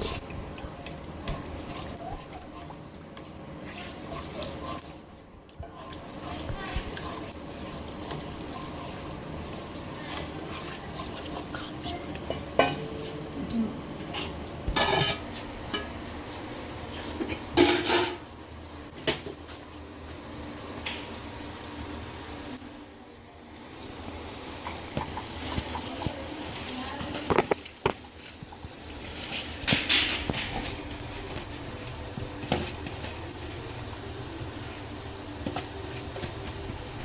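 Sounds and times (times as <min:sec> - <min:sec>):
utensils clattering: 0:00.0 - 0:13.4, 0:14.0 - 0:16.2, 0:16.9 - 0:19.7, 0:24.5 - 0:34.0
metal utensils scraping a pot: 0:03.6 - 0:12.8, 0:14.1 - 0:16.0, 0:17.0 - 0:18.3.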